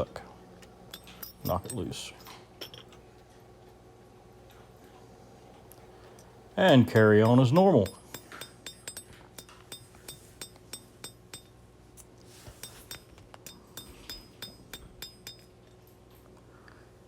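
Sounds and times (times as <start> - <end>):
hammer blows on anvil: 6.6 - 11.6, 12.6 - 15.6.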